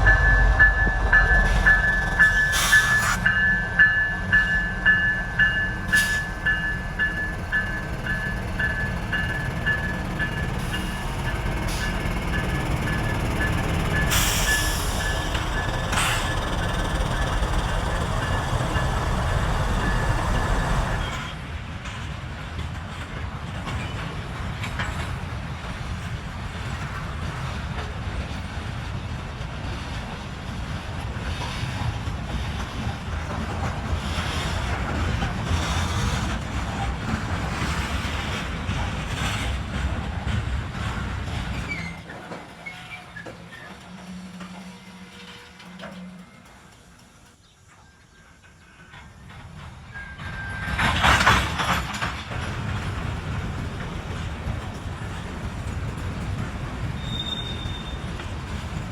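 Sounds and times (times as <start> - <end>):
train wheels rumbling on rails: 0.0 - 58.9.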